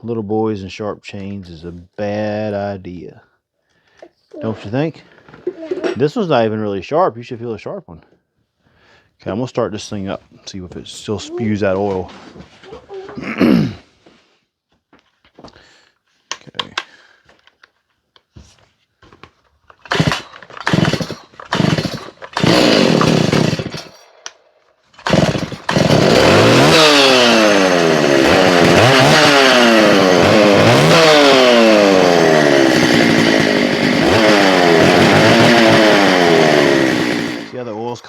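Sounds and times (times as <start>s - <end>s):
chainsaw pull cord: 4.3s - 6.0s, 19.2s - 37.6s
chainsaw engine revving: 5.5s - 6.0s, 19.8s - 24.4s, 25.0s - 37.6s.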